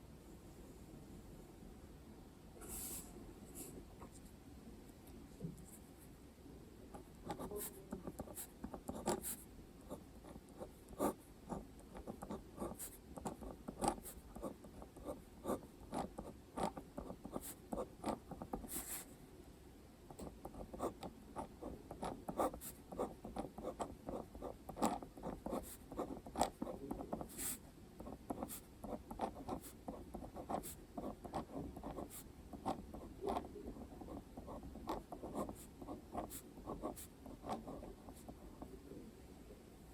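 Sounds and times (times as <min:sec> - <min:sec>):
pen scratching on paper: 0:06.9 - 0:19.1, 0:20.1 - 0:38.7.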